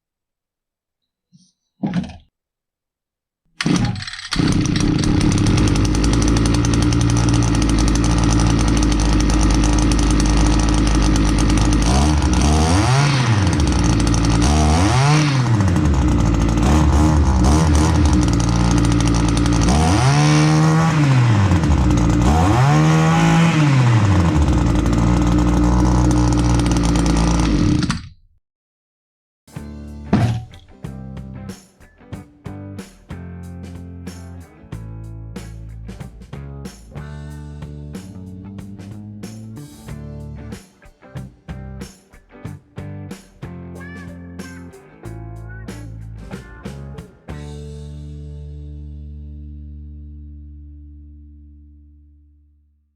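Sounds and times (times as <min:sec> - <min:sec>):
two-stroke engine idling and revving: 0:03.6 - 0:28.1.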